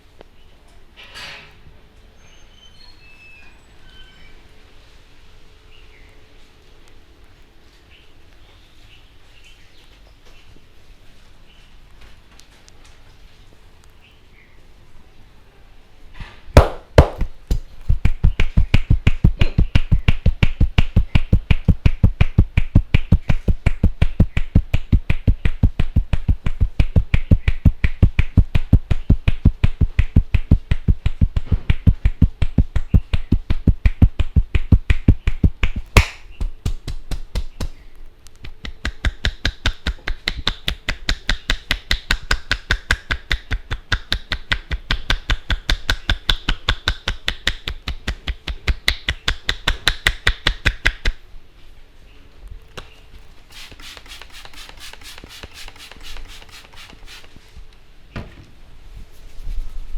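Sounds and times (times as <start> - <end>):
hands slapping a head: 16.6 - 37.8, 38.4 - 51.2.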